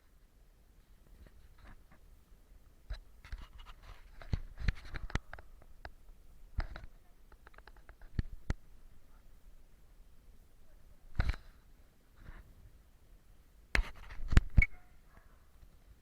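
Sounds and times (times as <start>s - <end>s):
irregular scratching: 2.9s - 5.5s, 13.8s - 15.2s.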